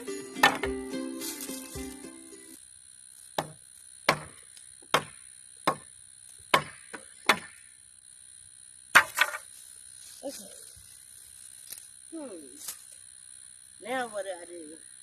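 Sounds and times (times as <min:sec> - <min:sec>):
hammer striking wood: 0:00.4 - 0:00.8, 0:03.4 - 0:05.9, 0:06.5 - 0:07.6, 0:09.0 - 0:09.4.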